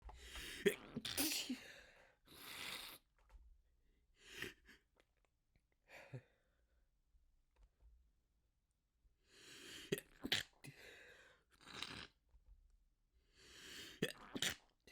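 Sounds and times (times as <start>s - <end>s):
person sneezing: 1.0s - 1.7s.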